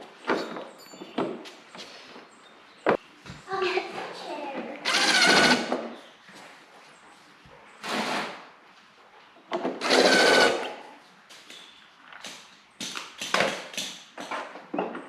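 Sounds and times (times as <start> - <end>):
cordless drill driving screws: 4.9 - 5.7, 9.8 - 10.7.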